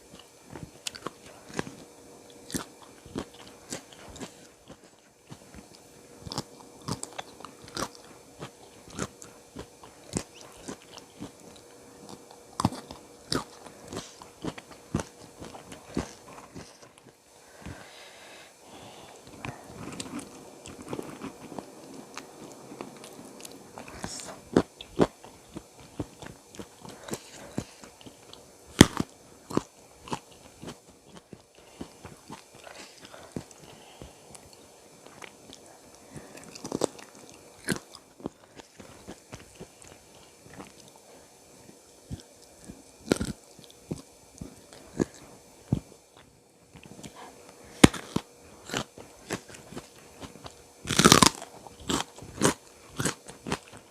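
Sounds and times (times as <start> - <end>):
close chewing and biting: 0.1 - 17.9, 19.1 - 53.9
sharp food crunches: 2.4 - 17.1, 19.4 - 33.6, 35.0 - 41.0, 42.1 - 45.8, 46.8 - 53.9.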